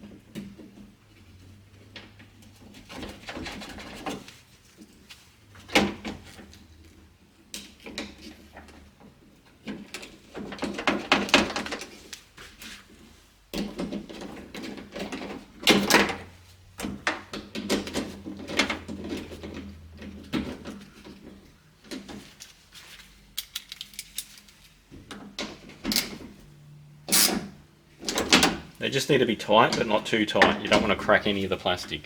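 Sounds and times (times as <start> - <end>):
handle and tools rattling: 13.6 - 26.4.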